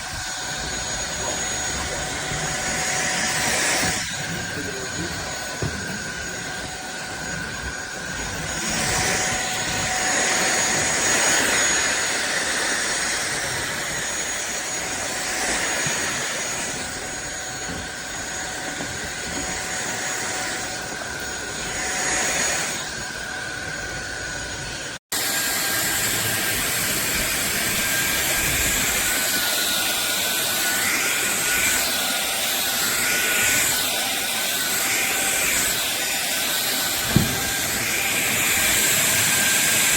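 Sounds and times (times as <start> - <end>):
vacuum cleaner motor whine: 0.0 - 39.9.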